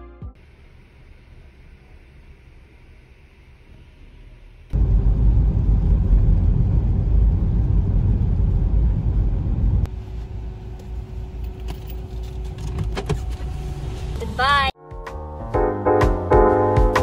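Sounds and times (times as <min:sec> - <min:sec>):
loud low rumbling: 0:04.7 - 0:10.8.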